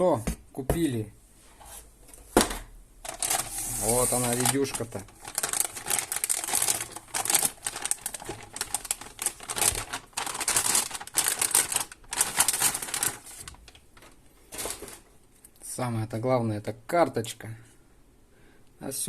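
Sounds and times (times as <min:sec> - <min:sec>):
packaging crinkling and rustling: 0:03.0 - 0:15.1.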